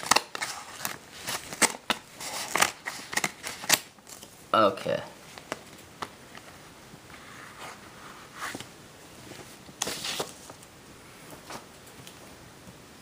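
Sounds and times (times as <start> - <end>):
crinkling rustle: 8.4 - 10.7.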